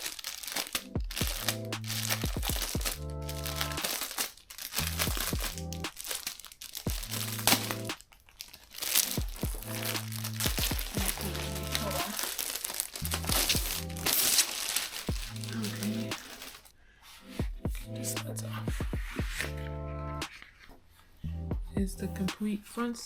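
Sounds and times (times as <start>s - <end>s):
packaging crinkling: 0.0s - 16.7s
music of sustained chords: 0.8s - 3.9s, 4.8s - 5.9s, 6.9s - 8.0s, 9.0s - 12.3s, 13.0s - 14.4s, 15.1s - 16.2s, 17.2s - 20.2s.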